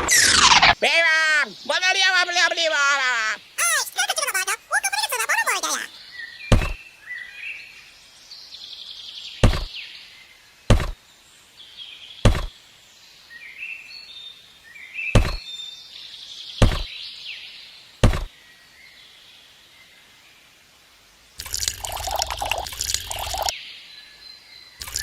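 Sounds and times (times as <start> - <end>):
sharp knocks: 6.5 - 6.8, 9.4 - 9.7, 10.7 - 11.0, 12.3 - 12.5, 15.2 - 15.4, 16.6 - 16.9, 18.0 - 18.3.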